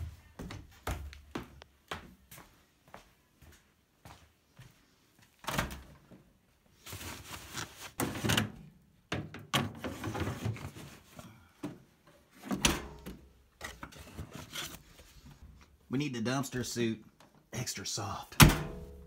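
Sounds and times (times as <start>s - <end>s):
rustling handling noise: 6.6s - 8.6s, 12.2s - 15.8s.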